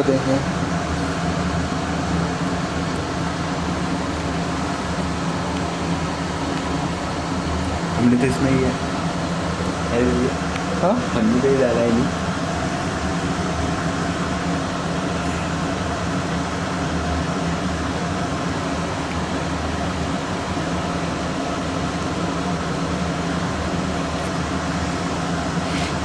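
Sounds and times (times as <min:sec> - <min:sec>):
fan humming: 0:00.0 - 0:26.0.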